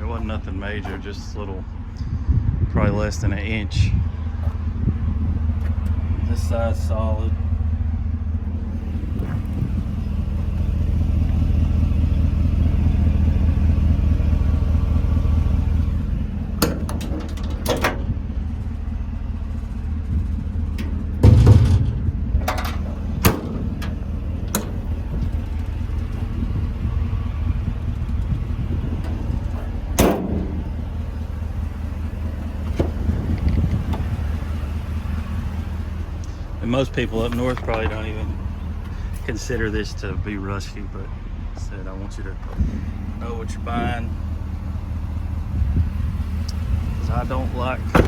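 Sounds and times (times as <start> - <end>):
truck engine idling: 0.0 - 48.0
knocks and clunks: 8.7 - 11.6, 14.9 - 18.8, 19.5 - 39.7, 42.4 - 48.0.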